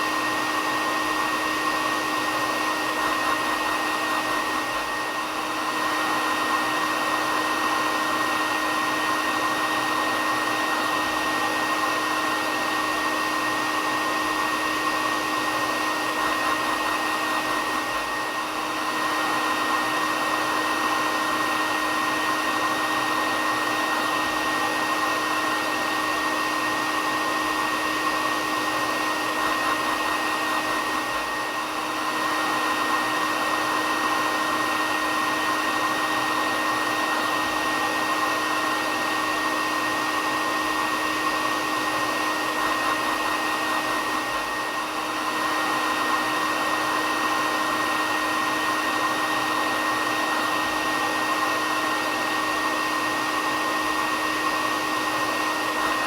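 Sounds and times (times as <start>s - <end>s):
hair dryer blowing: 0.0s - 56.0s.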